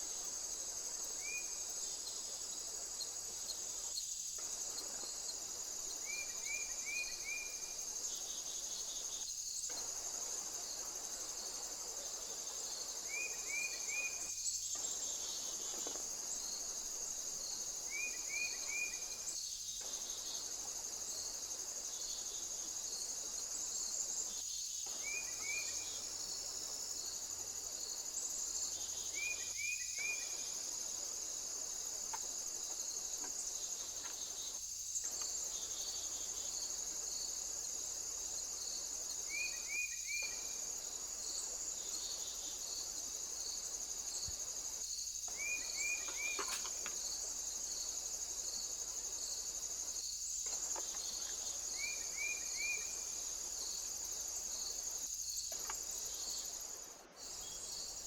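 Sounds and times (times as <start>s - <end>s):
crickets and insects chirring: 0.0s - 58.0s.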